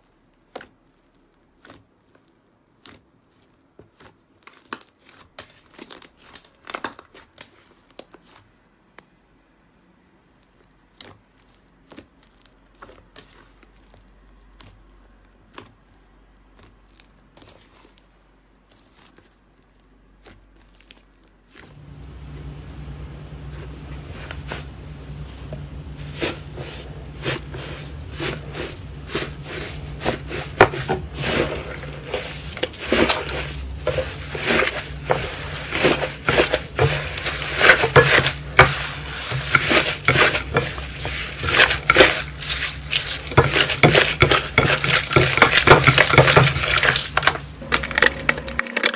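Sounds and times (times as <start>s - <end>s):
low steady hum: 21.7s - 48.9s.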